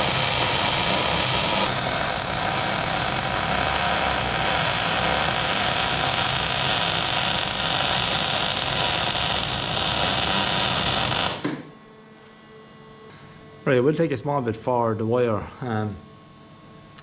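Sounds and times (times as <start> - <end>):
welder arc sizzling and crackling: 0.0 - 11.6.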